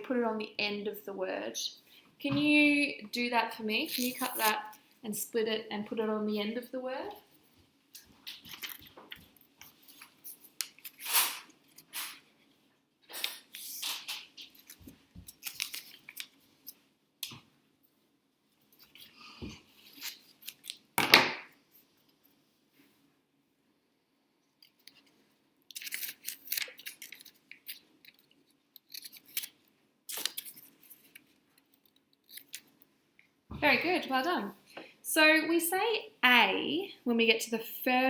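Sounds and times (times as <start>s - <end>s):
scissors snipping paper: 3.9s - 4.8s, 25.7s - 32.7s
paper handling: 8.3s - 12.1s, 13.2s - 16.8s, 25.7s - 32.7s.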